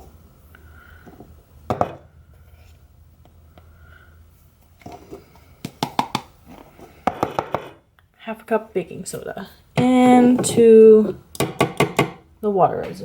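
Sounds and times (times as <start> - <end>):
sharp knocks and taps: 5.6 - 6.3, 11.4 - 12.2.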